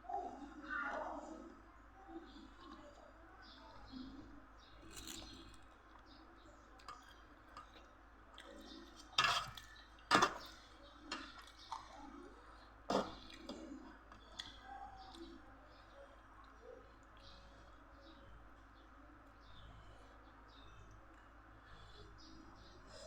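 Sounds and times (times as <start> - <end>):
crunches while chewing: 4.7 - 17.4
wet chewing: 4.8 - 17.4.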